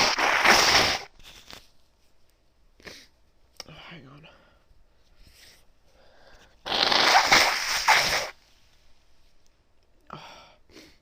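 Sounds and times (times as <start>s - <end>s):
woman blowing her nose: 0.0s - 1.6s, 6.6s - 8.4s.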